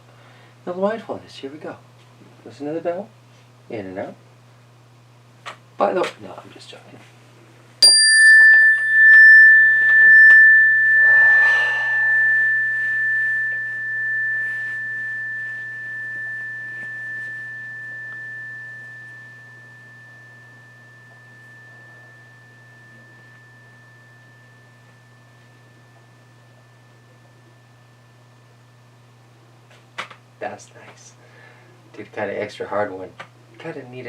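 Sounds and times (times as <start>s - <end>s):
meditation bell ringing: 7.8s - 28.7s.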